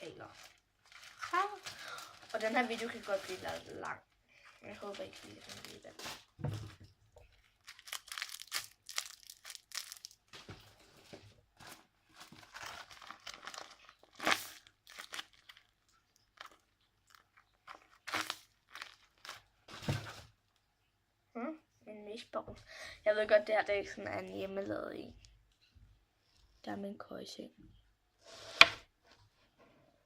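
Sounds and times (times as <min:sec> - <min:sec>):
paper and plastic crinkling: 0:00.0 - 0:20.4.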